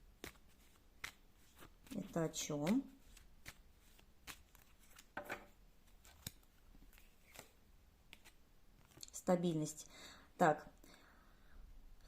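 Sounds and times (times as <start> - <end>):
cards clicking and rustling: 0.2 - 9.0.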